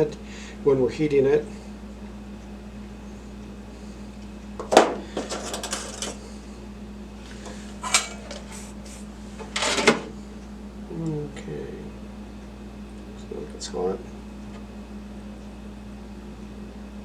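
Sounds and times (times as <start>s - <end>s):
steady low hum: 0.0s - 17.0s
tools rattling on a workbench: 4.6s - 6.2s, 7.8s - 8.5s.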